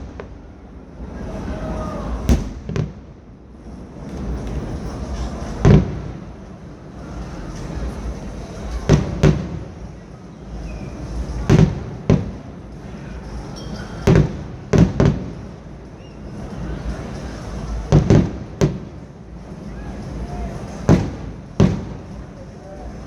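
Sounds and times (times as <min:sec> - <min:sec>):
low rumble: 0:00.8 - 0:05.6
fireworks bangs with echo: 0:02.1 - 0:03.4, 0:05.6 - 0:06.2, 0:08.6 - 0:09.7, 0:11.4 - 0:12.4, 0:14.0 - 0:15.5, 0:17.8 - 0:19.0, 0:20.3 - 0:22.3.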